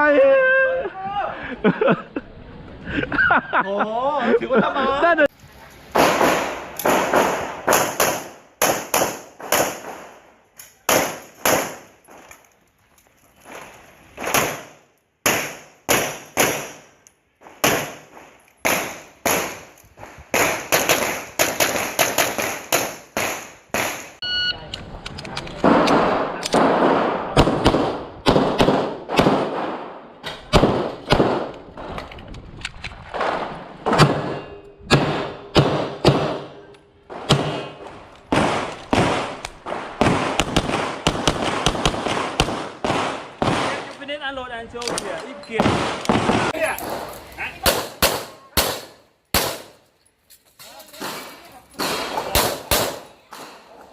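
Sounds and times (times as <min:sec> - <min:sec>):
handgun shots: 0:47.6 - 0:49.8, 0:51.8 - 0:53.6.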